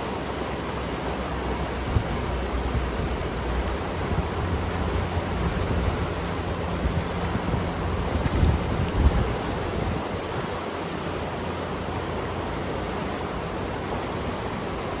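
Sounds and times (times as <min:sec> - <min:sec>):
river water rushing: 0:00.0 - 0:15.0
wind on microphone: 0:01.6 - 0:10.6.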